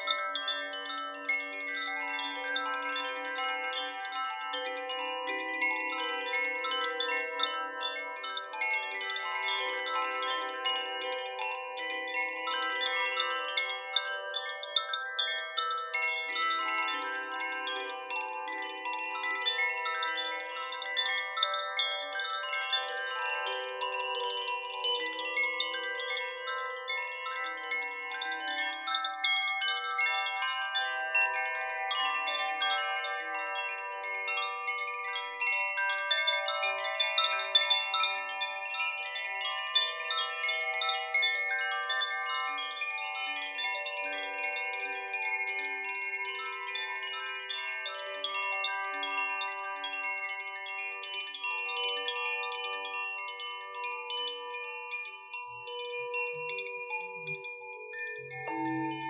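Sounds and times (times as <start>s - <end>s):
chimes ringing: 55.2s - 59.0s.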